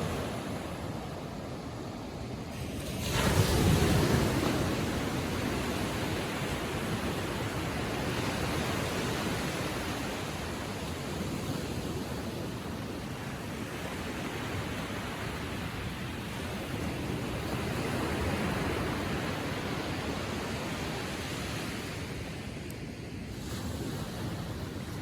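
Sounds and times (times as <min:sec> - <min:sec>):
hiss of surf: 0:00.0 - 0:16.0.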